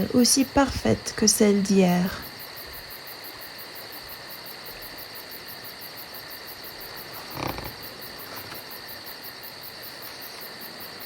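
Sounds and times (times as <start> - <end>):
crickets chirping: 0.0 - 11.0.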